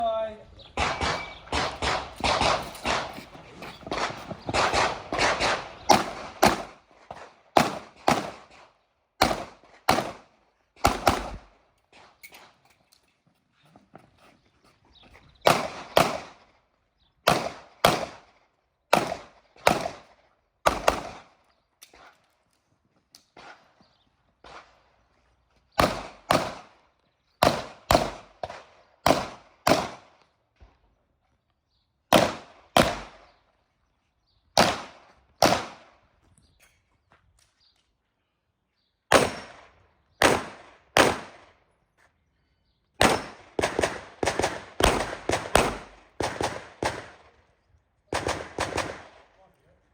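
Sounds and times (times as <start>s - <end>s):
pistol shots with echo: 0.6s - 11.5s, 15.4s - 16.5s, 17.2s - 21.4s, 25.8s - 26.8s, 27.4s - 30.2s, 32.1s - 33.4s, 34.6s - 36.0s, 39.1s - 41.6s, 43.0s - 47.5s, 48.1s - 49.4s
faint distant gunshots: 0.6s - 12.1s, 15.4s - 16.5s, 17.2s - 21.4s, 25.8s - 26.8s, 27.4s - 30.2s, 32.1s - 33.4s, 34.6s - 36.0s, 39.1s - 41.6s, 43.0s - 47.4s, 48.1s - 49.4s.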